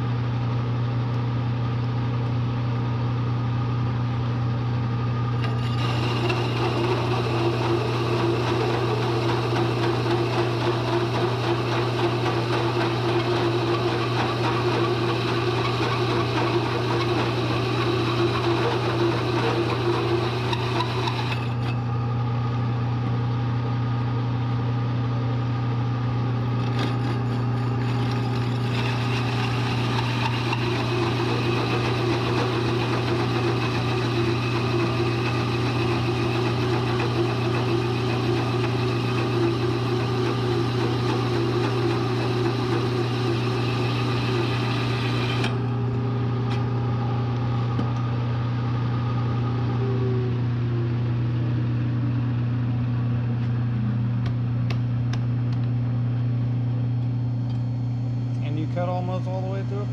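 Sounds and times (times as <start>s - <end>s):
milling machine motor hum: 0.0s - 59.9s
hole saw scraping steel: 5.4s - 21.9s, 26.6s - 39.8s.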